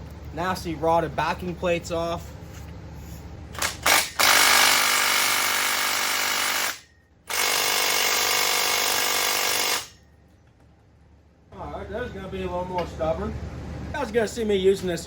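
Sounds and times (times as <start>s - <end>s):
impact wrench bursts: 3.5s - 10.0s.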